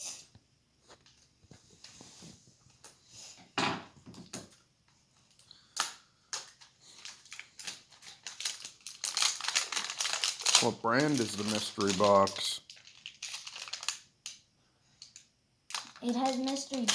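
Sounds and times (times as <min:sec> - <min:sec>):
cardboard and packaging rustling: 0:06.4 - 0:14.0, 0:15.7 - 0:16.9.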